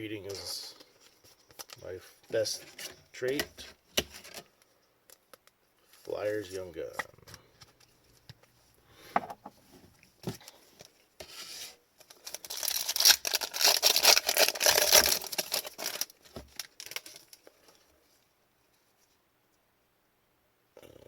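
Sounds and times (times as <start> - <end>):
trading cards crinkling and rustling: 0.2 - 8.6, 10.2 - 17.9
card pack wrapper rustling: 12.0 - 17.8.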